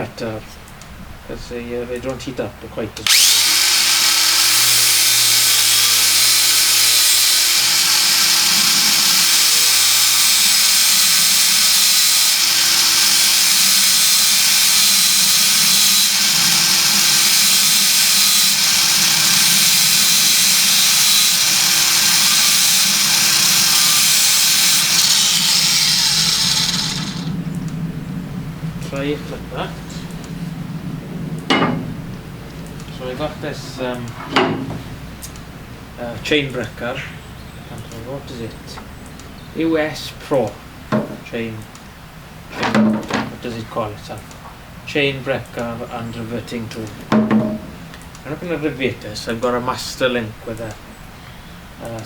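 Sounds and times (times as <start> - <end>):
angle grinder grinding steel: 3.0 - 27.4.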